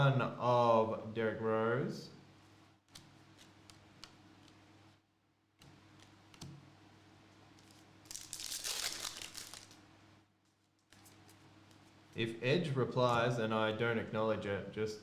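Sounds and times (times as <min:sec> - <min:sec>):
foil wrapper crinkling: 0:07.6 - 0:09.8
light ticks of card handling: 0:10.4 - 0:12.2.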